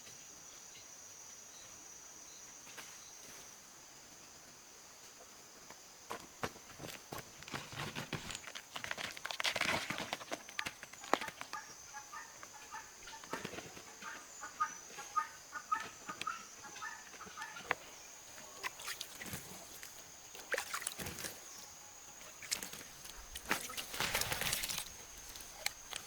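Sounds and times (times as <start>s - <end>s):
chickens clucking: 10.6s - 18.8s.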